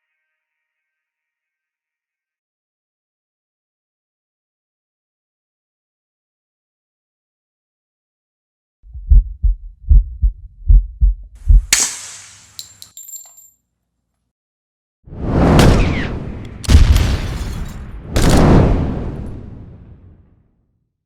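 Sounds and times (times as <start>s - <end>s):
deep thumps like heartbeat: 8.9s - 11.7s
loud rumbling booms: 15.5s - 20.3s.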